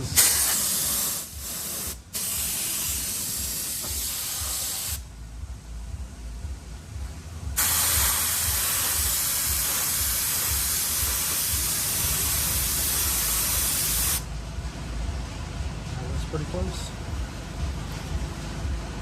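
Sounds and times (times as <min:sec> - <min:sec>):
paint spray hiss: 0:00.0 - 0:05.0, 0:07.6 - 0:14.3
steady low rumble: 0:00.0 - 0:19.0.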